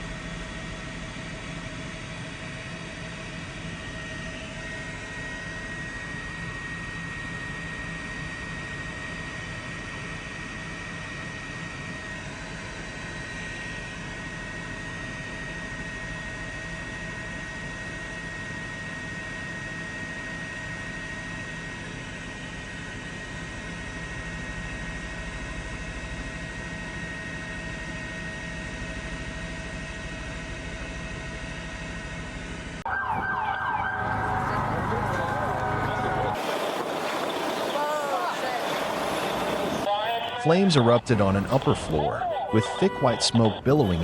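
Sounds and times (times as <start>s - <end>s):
engine drone with high whine: 20.3s - 44.0s
wavering tones: 33.4s - 39.9s.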